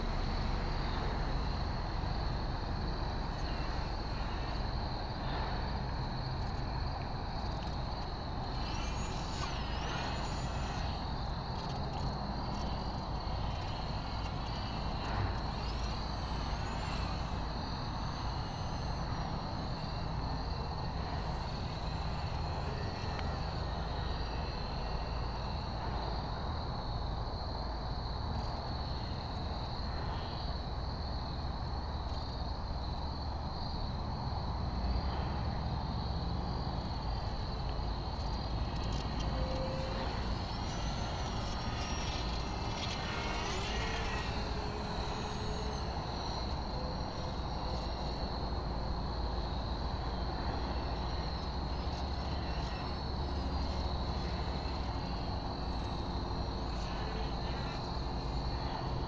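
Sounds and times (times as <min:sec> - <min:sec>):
high-pitched whine: 0:00.0 - 0:59.0
gliding chirps: 0:07.4 - 0:25.9, 0:38.1 - 0:48.1.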